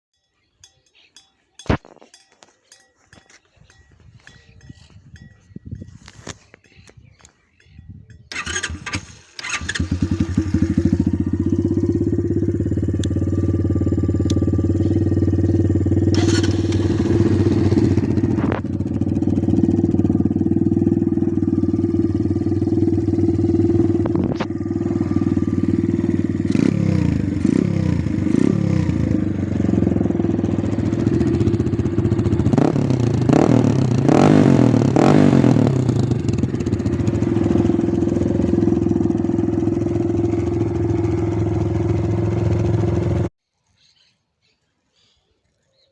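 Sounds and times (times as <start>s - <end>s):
motorcycle throttle blips: 1.6s - 43.3s
small motorcycle engine running: 8.2s - 43.3s.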